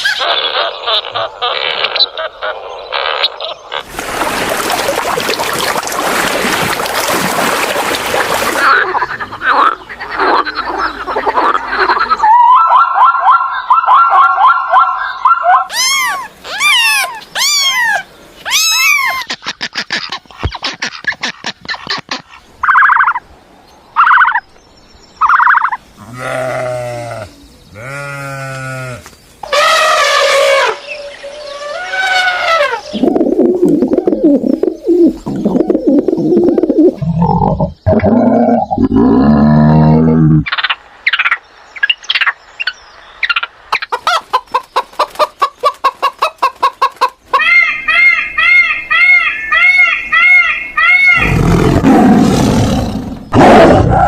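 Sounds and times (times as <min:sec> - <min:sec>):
high sweeping animal chirps: 0:14.7 - 0:19.5
low wavering animal calls: 0:47.6 - 0:54.0.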